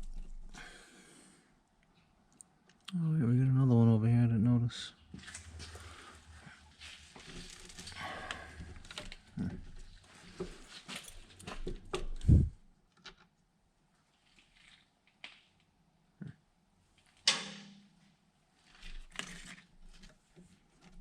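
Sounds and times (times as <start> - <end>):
tools and cables being handled: 5.1 - 13.3, 18.6 - 21.0.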